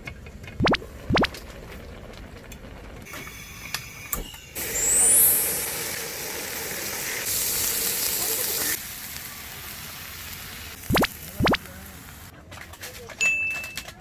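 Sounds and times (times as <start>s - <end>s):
meat sizzling in a hot pan: 4.6s - 12.3s.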